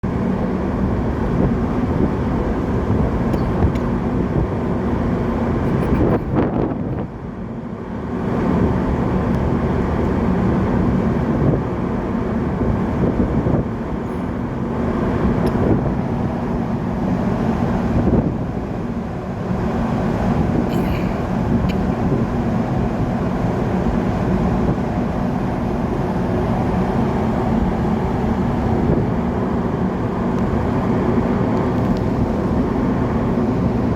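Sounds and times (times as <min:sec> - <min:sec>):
large ship engine drone: 0:00.0 - 0:33.9.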